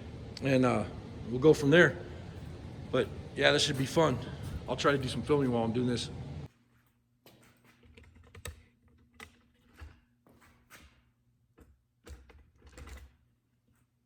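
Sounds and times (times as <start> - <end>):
faint steady hum: 0.0 - 6.5.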